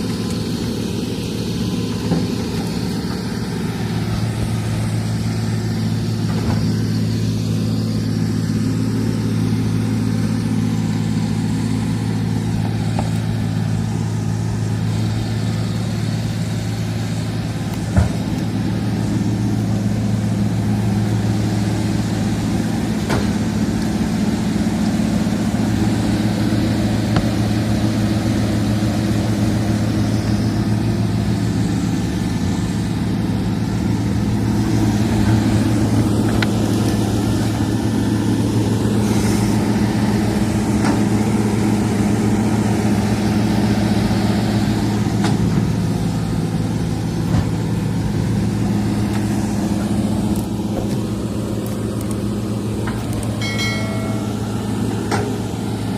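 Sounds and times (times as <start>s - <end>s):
excavator diesel engine running: 0.0s - 55.9s.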